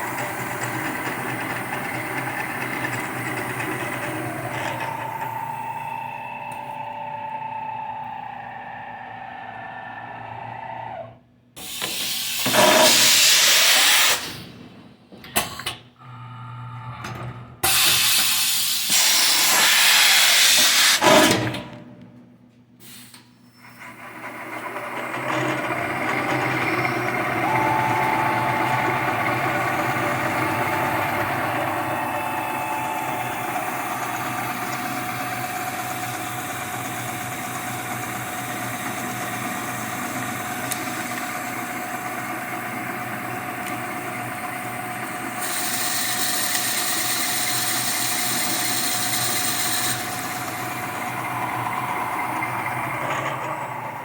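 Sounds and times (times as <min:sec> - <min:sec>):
mill spindle whining: 0:00.0 - 0:14.3, 0:23.6 - 0:54.0
compressed air hissing: 0:11.6 - 0:14.4, 0:17.7 - 0:21.0.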